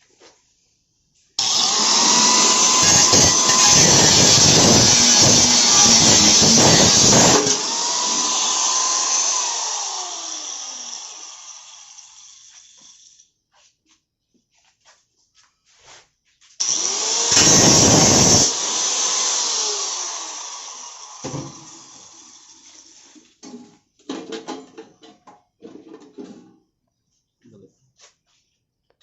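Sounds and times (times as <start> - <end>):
power tool whining: 1.4 - 13.3, 16.6 - 23.2.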